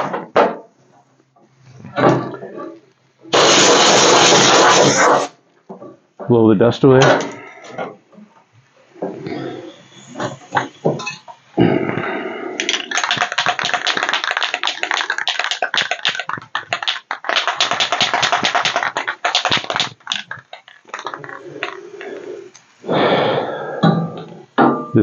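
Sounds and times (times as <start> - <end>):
spray can ball rattling: 3.3 - 5.3, 12.6 - 22.8.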